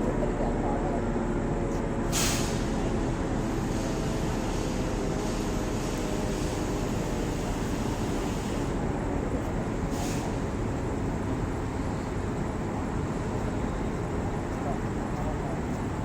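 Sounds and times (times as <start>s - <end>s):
train rumble and hiss: 0.0s - 16.0s
brief hiss: 2.1s - 2.8s.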